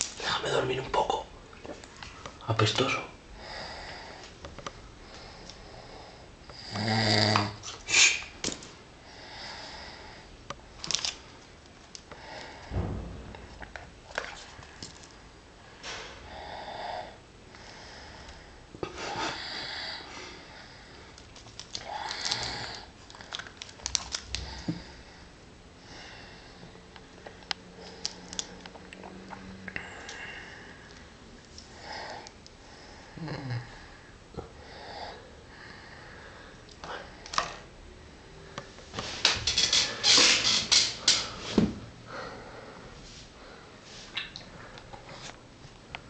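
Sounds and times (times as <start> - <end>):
man snoring: 6.6 - 7.6.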